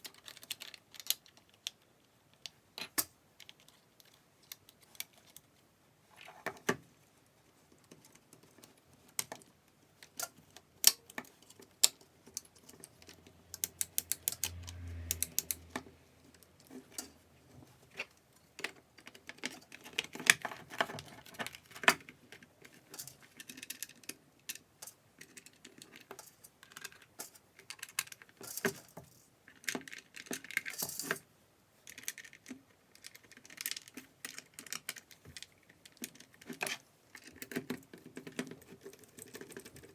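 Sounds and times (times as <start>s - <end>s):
small parts and tools clattering: 10.0s - 31.2s.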